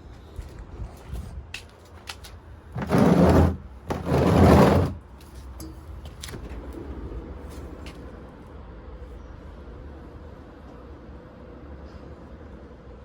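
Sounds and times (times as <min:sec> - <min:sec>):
rough scraping bursts: 0:02.8 - 0:05.0.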